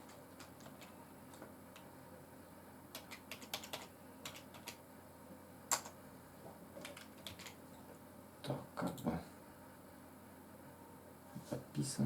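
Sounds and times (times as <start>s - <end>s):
faint keyboard typing: 0.0s - 1.9s, 2.9s - 4.8s, 5.7s - 6.0s, 6.8s - 9.2s.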